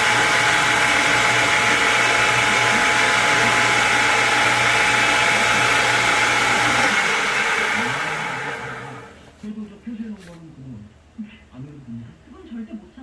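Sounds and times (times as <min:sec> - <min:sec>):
electric motor humming: 0:00.0 - 0:09.2.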